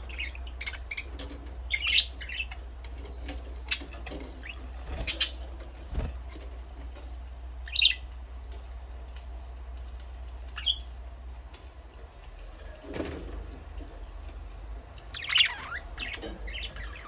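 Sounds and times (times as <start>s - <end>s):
budgerigars chirping: 0.0s - 6.1s, 7.6s - 8.0s, 15.1s - 17.0s
steady low hum: 0.0s - 17.0s.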